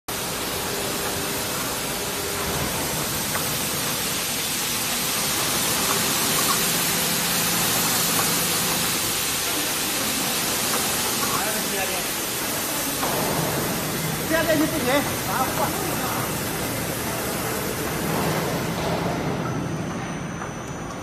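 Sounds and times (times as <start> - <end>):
carpet washing machine hissing: 0.1 - 20.8.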